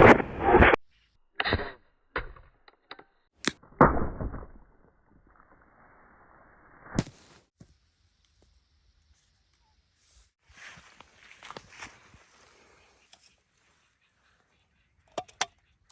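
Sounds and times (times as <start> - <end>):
sharp crack: 6.9 - 7.5.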